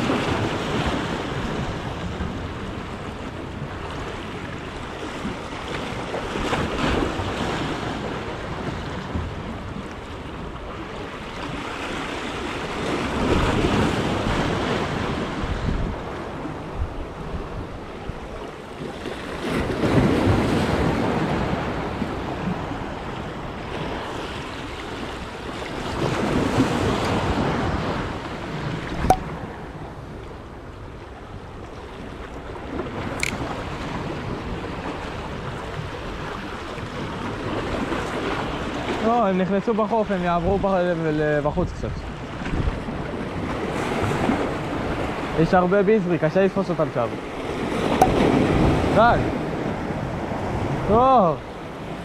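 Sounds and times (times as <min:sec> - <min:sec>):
wind on microphone: 0:00.0 - 0:39.0, 0:41.4 - 0:45.6, 0:46.6 - 0:52.0
sea waves washing in: 0:00.0 - 0:52.0
sharp click: 0:33.2 - 0:33.4.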